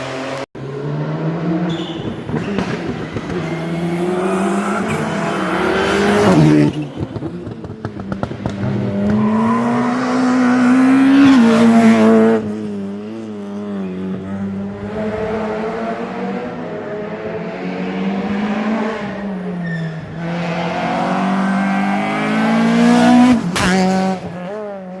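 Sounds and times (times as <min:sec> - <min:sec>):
rally car engine revving: 0:00.0 - 0:25.0
exhaust pops and crackles: 0:02.0 - 0:03.8, 0:06.2 - 0:09.2.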